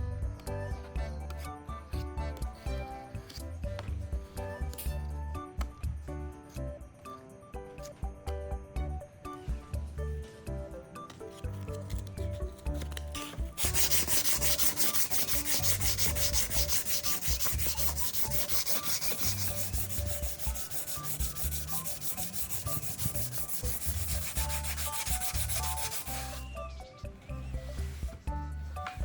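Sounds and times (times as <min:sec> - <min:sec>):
sandpaper rubbing on plastic: 0:11.7 - 0:26.6.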